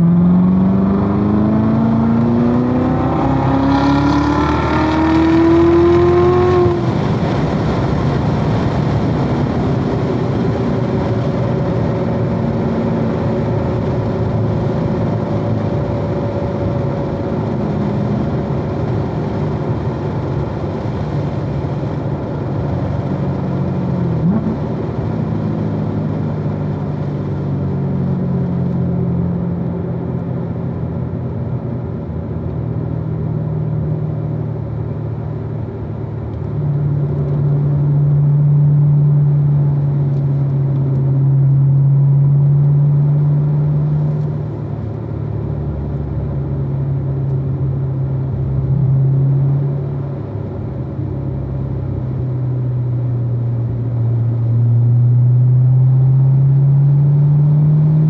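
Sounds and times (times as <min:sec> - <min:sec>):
sports car engine revving: 0:00.0 - 0:08.7, 0:31.8 - 0:58.0.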